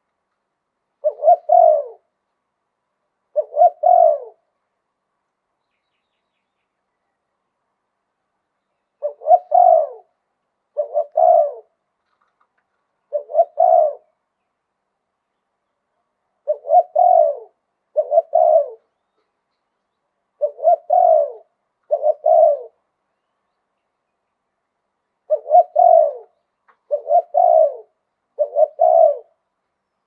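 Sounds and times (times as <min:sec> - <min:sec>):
dove cooing: 0:01.0 - 0:02.1, 0:03.3 - 0:04.5, 0:09.0 - 0:11.8, 0:13.0 - 0:14.2, 0:16.4 - 0:19.0, 0:20.4 - 0:22.8, 0:25.2 - 0:29.4.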